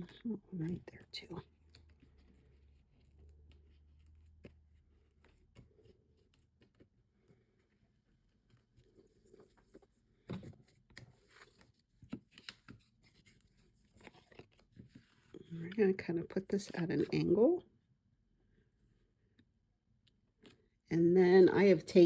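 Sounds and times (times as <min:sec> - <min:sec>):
paper tapping and rustling: 0:09.3 - 0:15.8.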